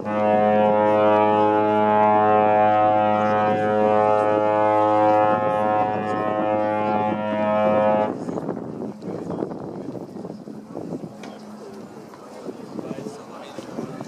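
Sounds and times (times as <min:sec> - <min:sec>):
ship horn low blast: 0:00.0 - 0:08.4.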